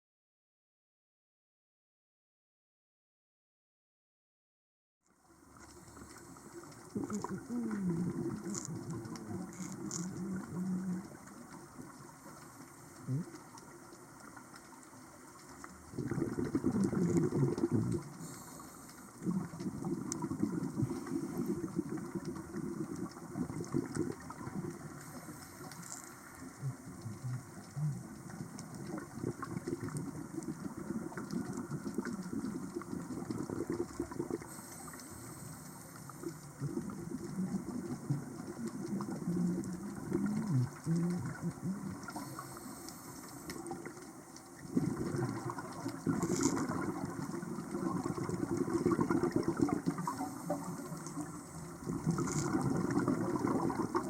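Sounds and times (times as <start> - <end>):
water bubbling and gushing: 5.4 - 54.0.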